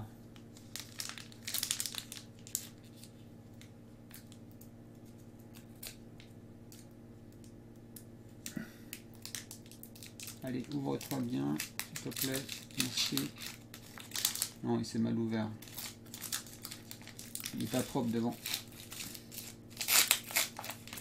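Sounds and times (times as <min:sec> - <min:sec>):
foil wrapper crinkling: 0:00.4 - 0:06.1, 0:08.9 - 0:14.6, 0:15.6 - 0:21.0.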